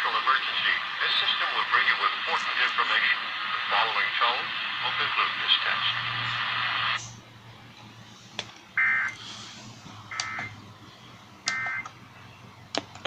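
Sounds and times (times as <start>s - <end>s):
radio hiss: 0.0s - 7.2s.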